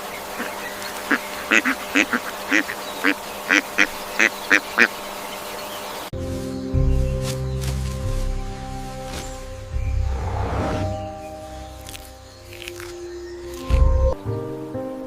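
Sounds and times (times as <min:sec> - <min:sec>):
duck quacking: 0:00.4 - 0:05.0
music: 0:06.2 - 0:15.0.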